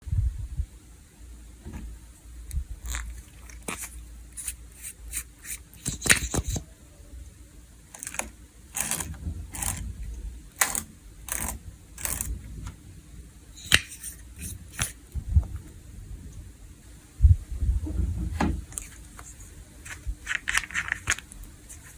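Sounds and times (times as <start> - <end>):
low handling rumble: 0.0 - 3.2, 8.5 - 13.5, 14.2 - 20.3.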